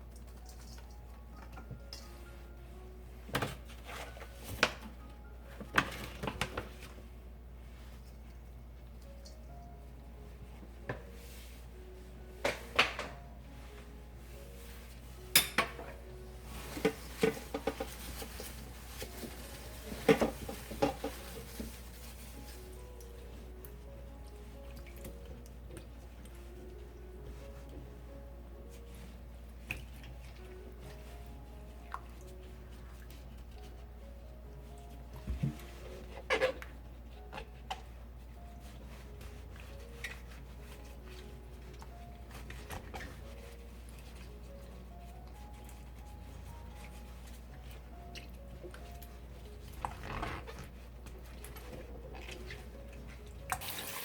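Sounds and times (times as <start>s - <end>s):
celery stalks knocking and rustling: 16.5s - 22.9s.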